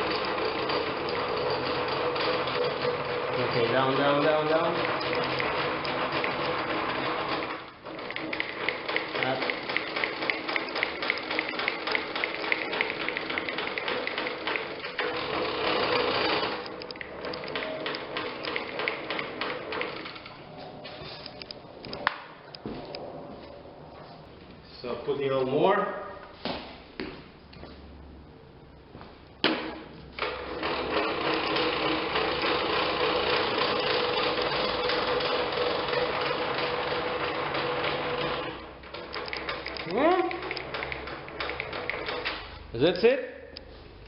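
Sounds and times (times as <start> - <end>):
crank mechanism gears clicking: 0.0 - 20.4, 30.2 - 42.5.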